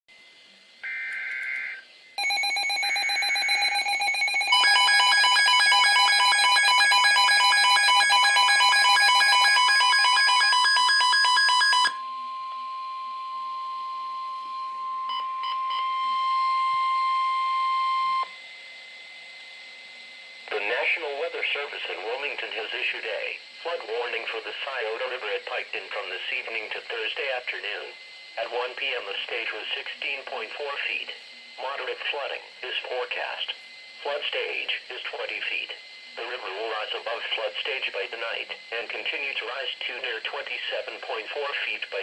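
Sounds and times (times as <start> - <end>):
electronic alarm beeping: 0.8 - 18.4
steady warning tone: 0.8 - 18.6.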